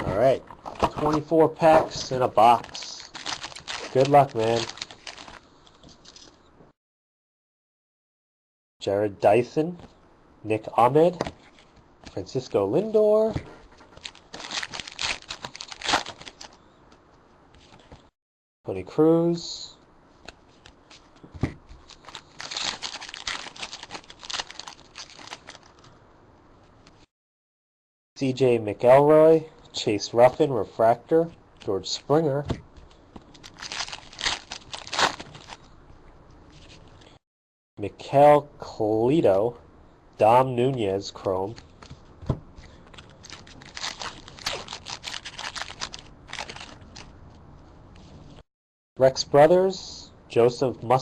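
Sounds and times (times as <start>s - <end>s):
foil wrapper crinkling and tearing: 2.4s - 5.4s, 14.0s - 16.6s, 21.7s - 25.9s, 33.3s - 35.7s, 42.6s - 47.1s.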